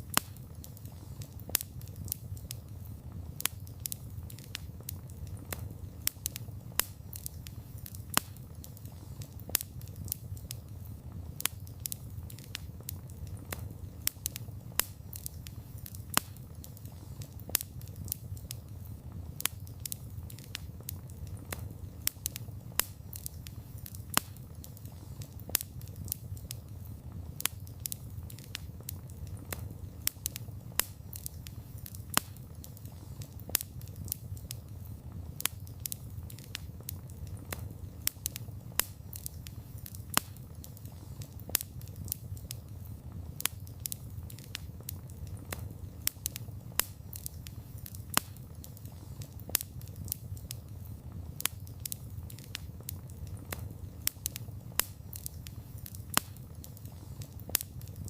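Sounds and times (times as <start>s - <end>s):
burning wood popping: 0.0s - 58.0s
wood fire crackling: 0.0s - 58.0s.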